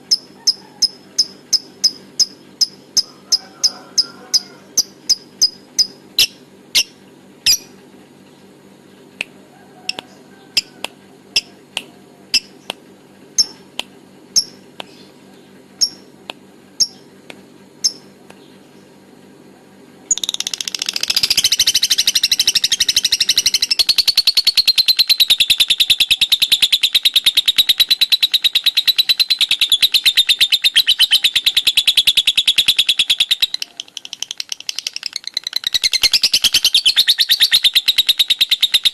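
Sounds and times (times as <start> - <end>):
lovebird chattering trill: 0.0 - 7.8, 9.9 - 11.6, 13.4 - 15.2, 15.8 - 16.1, 16.8 - 17.1, 17.8 - 18.1, 20.1 - 38.9
lovebird chirps: 0.1 - 7.7, 14.4 - 15.1, 15.8 - 16.1, 17.8 - 18.1.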